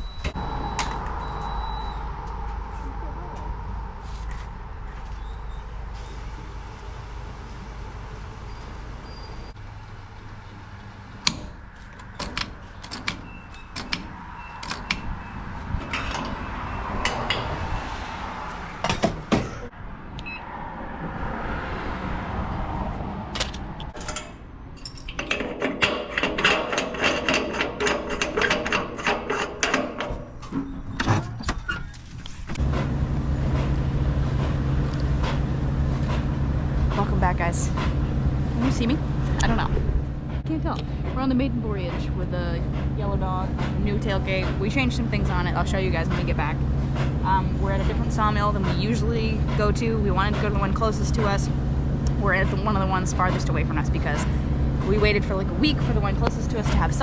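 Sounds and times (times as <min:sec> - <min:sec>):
vehicle engine running: 0:00.0 - 0:13.4, 0:32.5 - 0:57.0
loud steady engine hum: 0:00.0 - 0:24.8, 0:32.5 - 0:57.0
rattling and knocks: 0:11.2 - 0:17.9, 0:18.5 - 0:19.7, 0:23.3 - 0:57.0.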